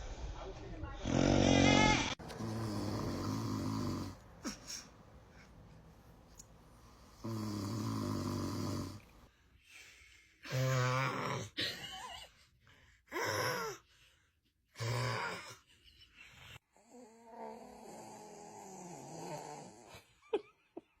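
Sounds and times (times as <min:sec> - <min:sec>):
man snoring: 0:01.0 - 0:04.9, 0:07.0 - 0:09.1, 0:10.5 - 0:11.6, 0:14.8 - 0:15.4, 0:16.8 - 0:19.9.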